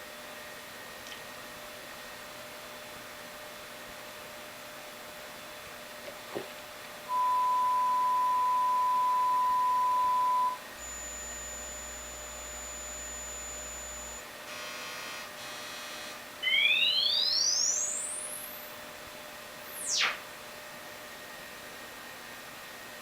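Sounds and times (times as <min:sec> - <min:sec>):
faint hum: 0:05.3 - 0:15.2, 0:16.0 - 0:22.7
steady sine test tone: 0:07.1 - 0:18.8.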